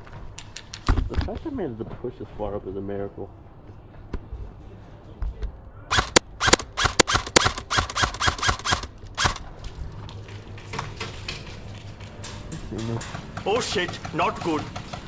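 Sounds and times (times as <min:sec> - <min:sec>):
airsoft gunfire cracks: 0:05.9 - 0:09.5.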